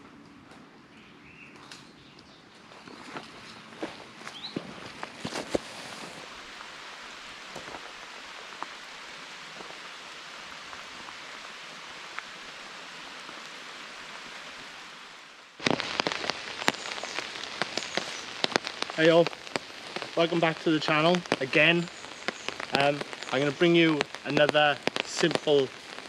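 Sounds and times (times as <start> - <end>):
steady rain hiss: 2.7 - 26.0
water drips ticking: 15.6 - 26.0.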